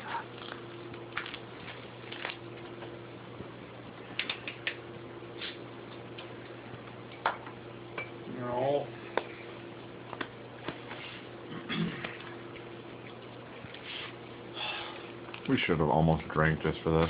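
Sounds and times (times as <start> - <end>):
steady low hum: 0.0 - 17.0
faint clicks and taps: 10.1 - 11.0.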